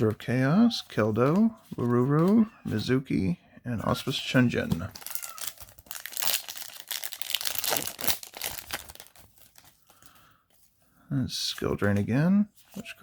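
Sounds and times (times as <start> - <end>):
foil wrapper crinkling and tearing: 4.9 - 10.2.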